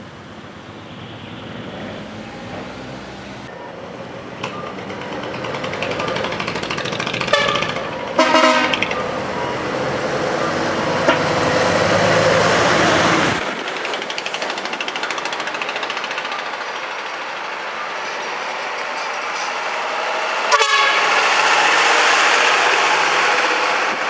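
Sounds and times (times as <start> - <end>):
truck engine pulling away: 0.0 - 24.0
truck horn blasts: 7.1 - 13.1, 20.5 - 21.9.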